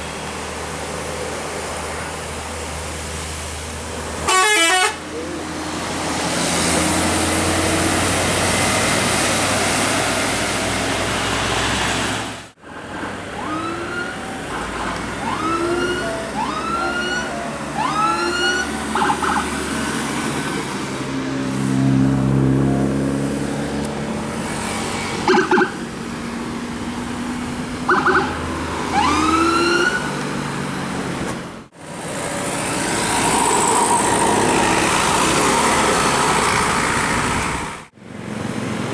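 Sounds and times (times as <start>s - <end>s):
traffic noise: 0.0s - 38.9s
horn blasts: 4.3s - 5.1s
siren whooping: 13.3s - 19.6s, 25.2s - 25.8s, 27.9s - 30.2s.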